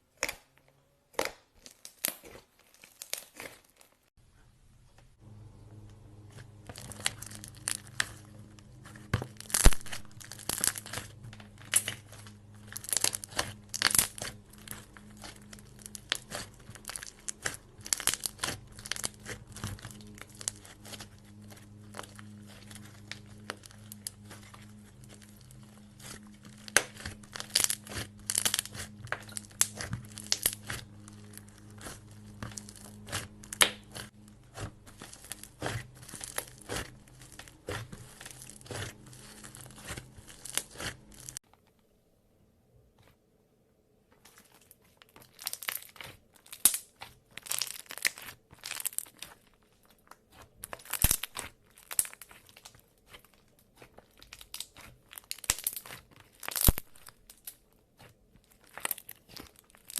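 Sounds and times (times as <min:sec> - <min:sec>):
slime crackling and popping: 0:01.1 - 0:04.1, 0:05.9 - 0:41.4, 0:44.2 - 0:59.9
low steady hum: 0:04.2 - 0:44.5.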